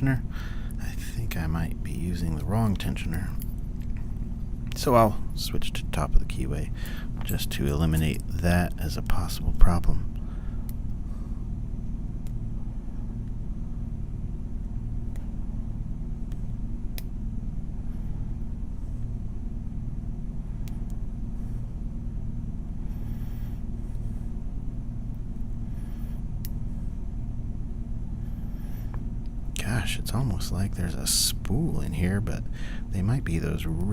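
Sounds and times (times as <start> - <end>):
steady low hum: 0.0 - 33.9.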